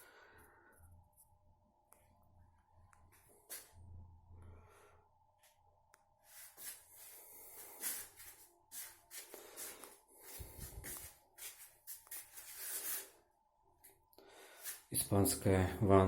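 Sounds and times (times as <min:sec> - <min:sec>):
faint rustling and shuffling: 0:05.4 - 0:15.3.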